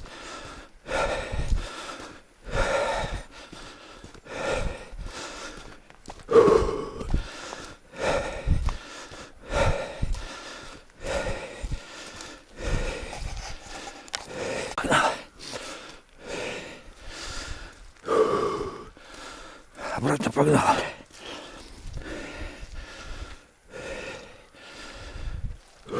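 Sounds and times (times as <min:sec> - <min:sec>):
man breathing hard: 0:00.0 - 0:20.0, 0:20.6 - 0:25.9.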